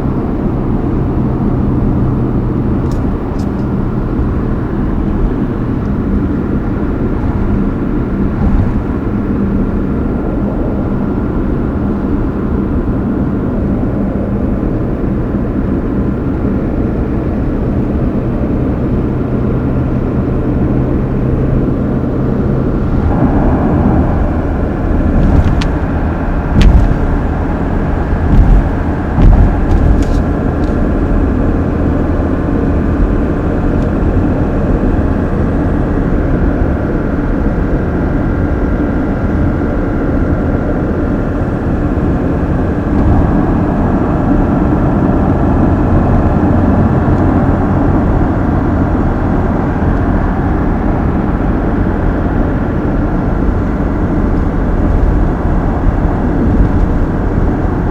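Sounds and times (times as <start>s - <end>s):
car engine and road noise: 0.0s - 57.9s
sharp knocks: 25.2s - 27.5s, 28.1s - 30.8s.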